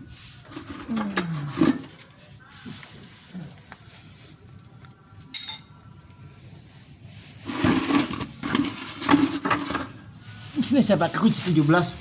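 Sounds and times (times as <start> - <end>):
sharp metallic clank: 5.3 - 5.8.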